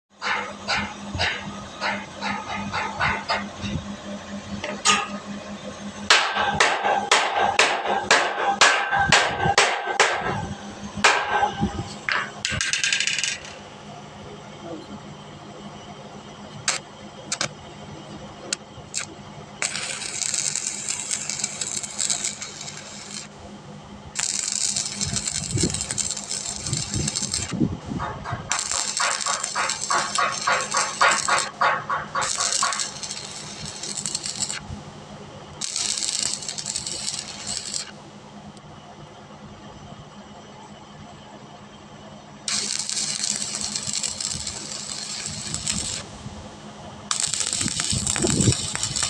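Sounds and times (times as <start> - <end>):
arc welding crackling: 16.6 - 17.6, 18.4 - 23.5, 24.1 - 34.8, 35.5 - 38.0, 42.5 - 46.4, 47.1 - 49.0.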